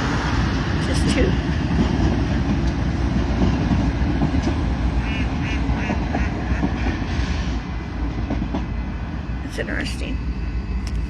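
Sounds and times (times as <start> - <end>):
steady low rumble: 0.0 - 11.0
duck quacking: 5.0 - 6.4.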